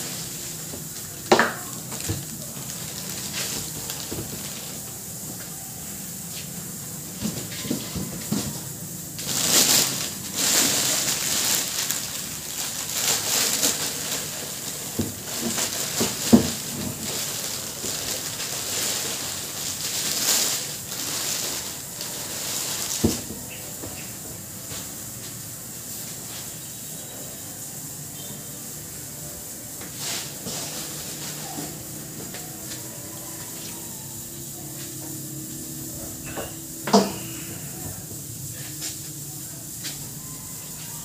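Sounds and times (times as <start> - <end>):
packaging rustling: 0.0 - 5.0, 7.4 - 23.7.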